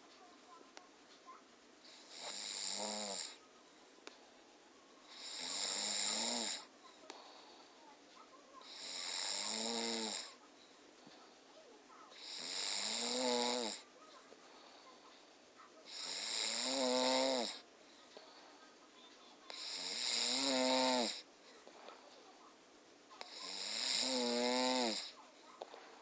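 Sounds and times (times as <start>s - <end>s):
person snoring: 1.9s - 3.4s, 5.0s - 7.4s, 8.6s - 10.3s, 12.2s - 13.8s, 15.9s - 17.6s, 19.5s - 21.2s, 23.2s - 25.2s.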